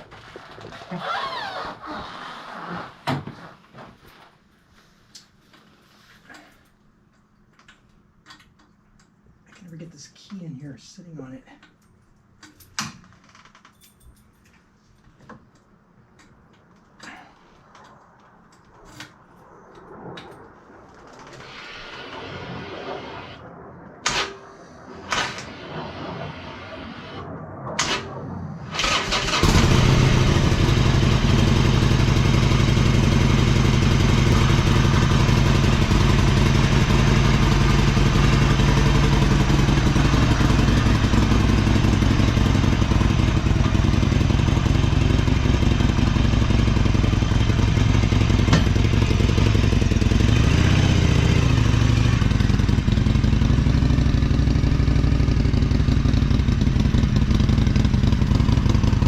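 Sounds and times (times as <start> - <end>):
motorcycle engine idling: 29.3 - 59.0.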